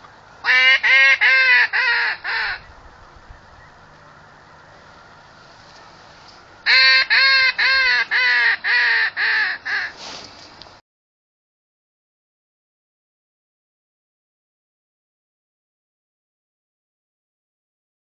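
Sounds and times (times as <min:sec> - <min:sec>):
goose honking: 0:06.6 - 0:10.0.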